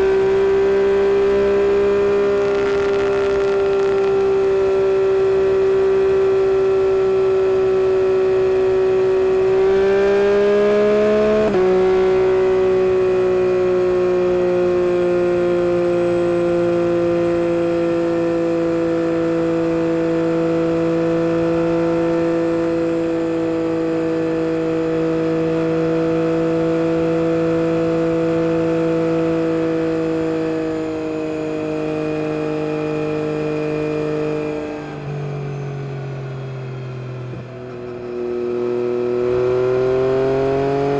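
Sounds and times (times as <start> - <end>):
motorcycle engine revving high: 0.8 - 13.2.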